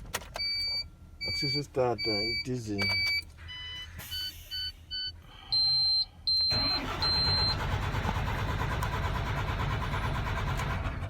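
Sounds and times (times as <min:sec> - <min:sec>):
diesel engine cranking and running: 0:06.3 - 0:11.0.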